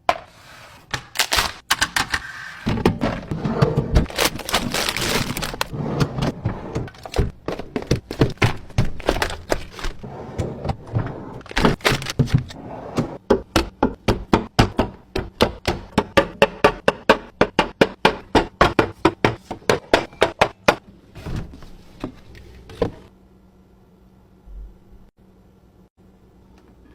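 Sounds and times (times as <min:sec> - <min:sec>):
containers knocking on shelves: 0:13.0 - 0:20.8.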